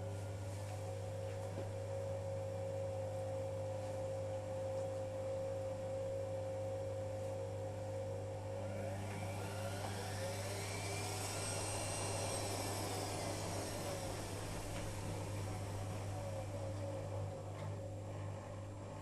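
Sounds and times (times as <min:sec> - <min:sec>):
washing machine running: 0:07.4 - 0:19.0
motor whine rising in pitch: 0:08.1 - 0:17.8.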